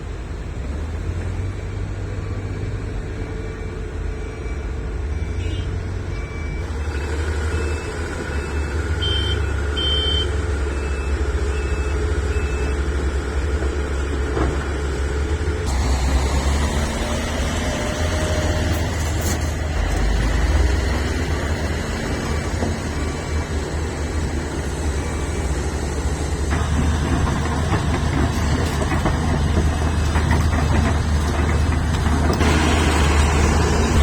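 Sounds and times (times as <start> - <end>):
diesel engine drone: 0.0 - 34.0
reversing alarm beeps: 3.2 - 12.8.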